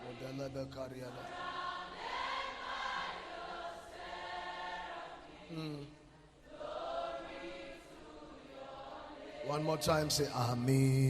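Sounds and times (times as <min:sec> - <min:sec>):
man's voice: 0:00.0 - 0:01.3, 0:09.4 - 0:11.0
group singing slow chant: 0:00.0 - 0:11.0.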